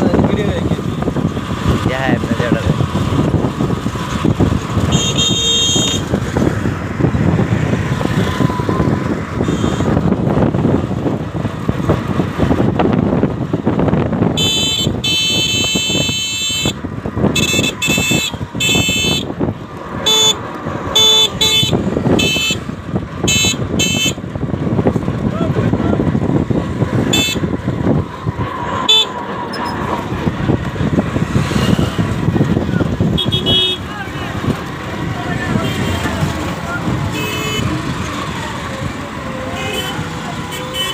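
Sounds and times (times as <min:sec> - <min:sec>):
busy road traffic: 0:00.0 - 0:40.9
vehicle horns honking: 0:04.8 - 0:06.2, 0:09.4 - 0:10.0, 0:14.4 - 0:19.3, 0:20.0 - 0:24.2, 0:27.1 - 0:27.5, 0:28.8 - 0:29.2, 0:33.1 - 0:34.0, 0:35.5 - 0:36.2, 0:37.0 - 0:38.0, 0:39.4 - 0:40.9.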